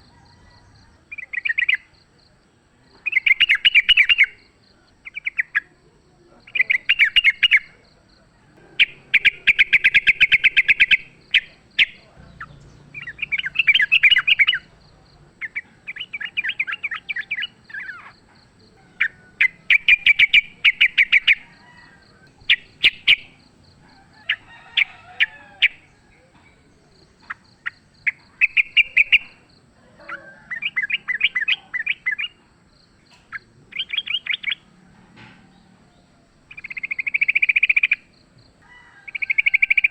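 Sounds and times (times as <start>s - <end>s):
birds chattering: 0.0s - 39.9s.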